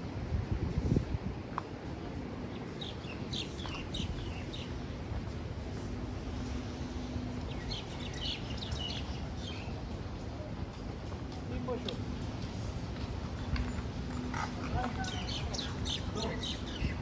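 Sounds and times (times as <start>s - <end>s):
low outdoor background noise: 0.0s - 17.0s
small birds chirping: 2.5s - 5.0s, 7.4s - 10.0s, 13.8s - 17.0s.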